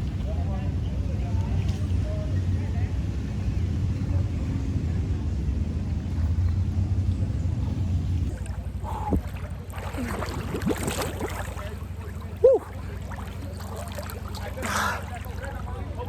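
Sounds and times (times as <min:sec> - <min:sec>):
river water rushing: 0:08.3 - 0:15.8
voices calling out: 0:11.3 - 0:16.0.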